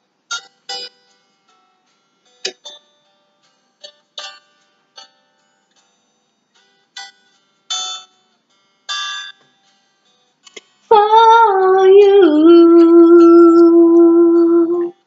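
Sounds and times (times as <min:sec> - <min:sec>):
woman singing a long note: 0:10.9 - 0:15.0.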